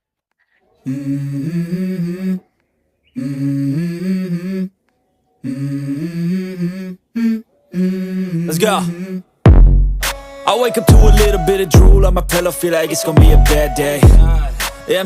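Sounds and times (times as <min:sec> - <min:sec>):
person humming a melody: 0:00.8 - 0:02.5, 0:03.2 - 0:04.8, 0:05.4 - 0:09.4, 0:10.0 - 0:15.0.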